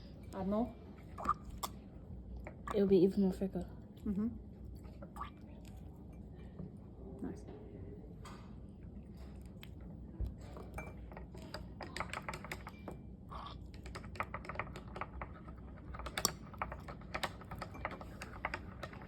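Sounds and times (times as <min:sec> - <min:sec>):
stirring rod tapping a cup: 0:10.2 - 0:19.0.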